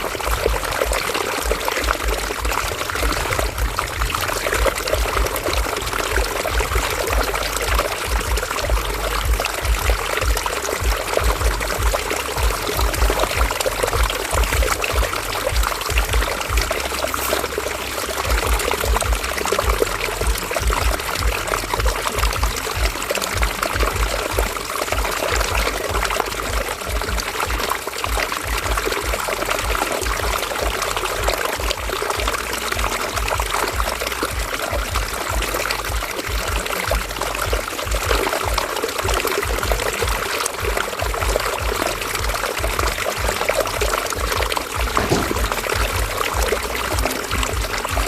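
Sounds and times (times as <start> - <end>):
low fluttering rumble: 0.0 - 29.4, 44.8 - 47.9
river water flowing and splashing: 0.0 - 48.0.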